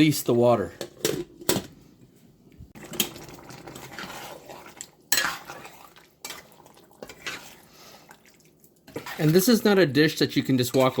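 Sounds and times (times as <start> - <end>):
scraping and stirring in pot: 2.7 - 11.0.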